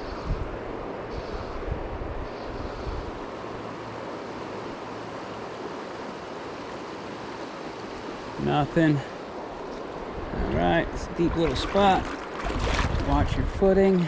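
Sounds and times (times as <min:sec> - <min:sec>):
wind buffeting microphone: 0:10.0 - 0:13.9.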